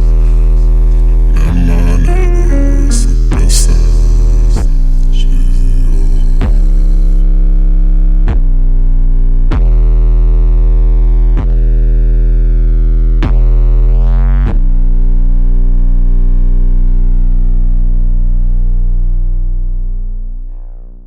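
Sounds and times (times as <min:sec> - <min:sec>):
deep synthesizer tone: 0:00.0 - 0:07.2, 0:19.5 - 0:21.0.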